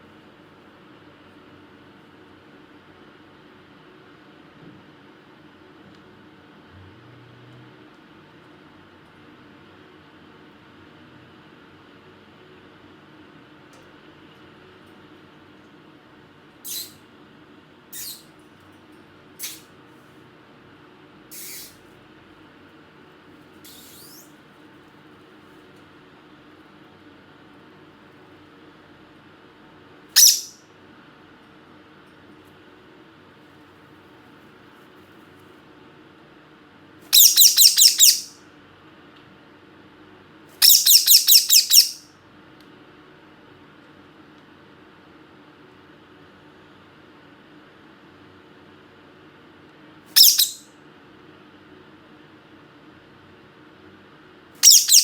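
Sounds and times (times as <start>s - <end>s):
parrot shrill chirps: 16.7s - 17.0s, 17.9s - 18.2s, 19.4s - 19.6s, 21.3s - 21.8s, 23.7s - 24.3s, 30.2s - 30.6s, 37.1s - 38.4s, 40.6s - 42.0s, 50.1s - 50.7s, 54.6s - 55.0s.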